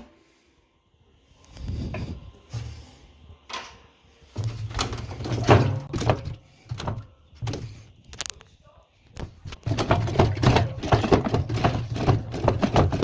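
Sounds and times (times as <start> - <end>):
washing machine parts knocking and rattling: 3.5 - 8.3, 9.2 - 13.0.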